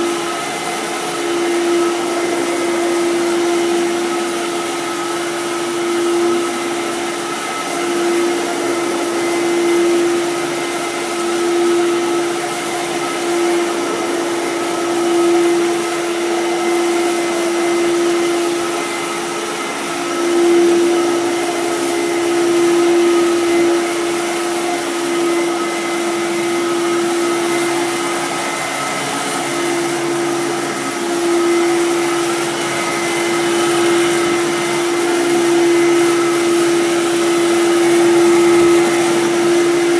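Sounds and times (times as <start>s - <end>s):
vacuum cleaner running: 0.0s - 39.9s.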